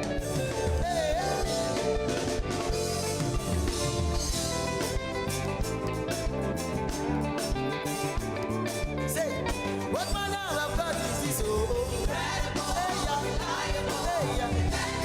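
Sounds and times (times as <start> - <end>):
band playing with steady beat: 0.0 - 15.0
person singing: 0.4 - 2.0, 9.0 - 15.0.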